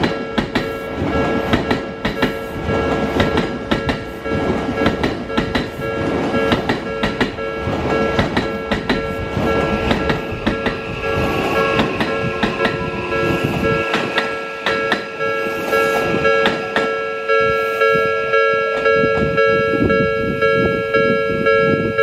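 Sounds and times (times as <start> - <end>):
train wheels clicking over rail joints: 0.0 - 17.0
crossing warning bells ringing: 0.0 - 22.0
rising motor whine: 10.7 - 16.8.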